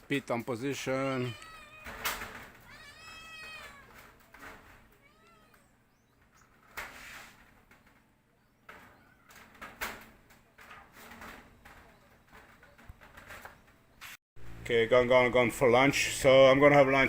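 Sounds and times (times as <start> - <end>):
cat meowing: 1.1 - 4.0, 5.0 - 5.7
knocks and clatters: 1.4 - 14.0.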